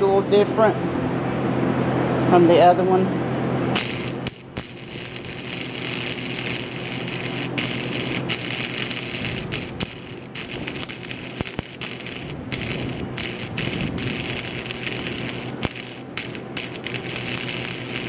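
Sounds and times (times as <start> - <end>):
welding arc crackling: 3.8 - 18.0.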